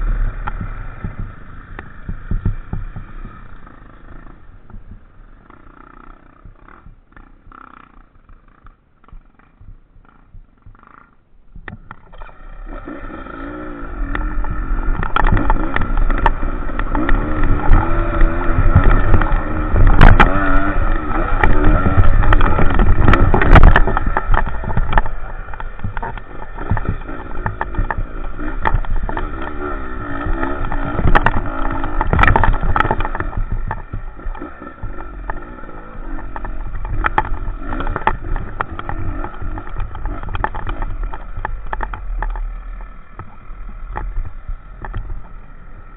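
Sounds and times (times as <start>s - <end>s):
motorcycle engine revving: 0.0s - 45.9s
knocks and rattles: 0.4s - 5.6s, 14.1s - 45.4s.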